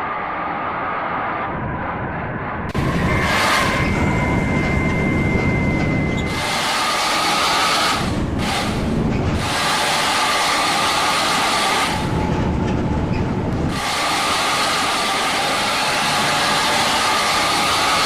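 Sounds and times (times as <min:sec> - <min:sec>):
low engine rumble: 0:00.0 - 0:14.1
bus road noise rushing: 0:00.0 - 0:18.0.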